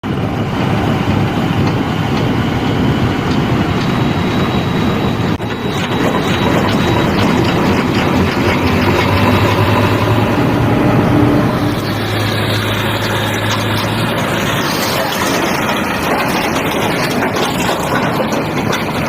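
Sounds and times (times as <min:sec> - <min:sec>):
diesel engine under load: 0:00.0 - 0:19.0
mechanical clatter and rattle: 0:00.0 - 0:19.0.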